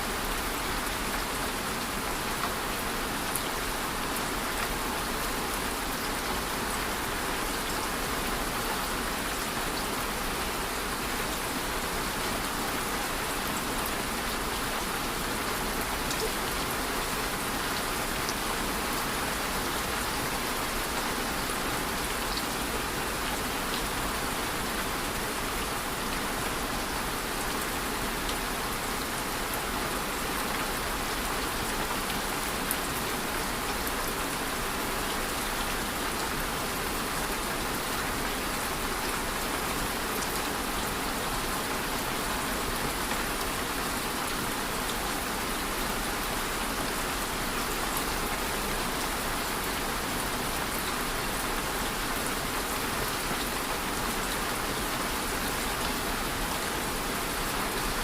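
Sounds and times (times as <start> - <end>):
steady rain hiss: 0.0 - 58.0.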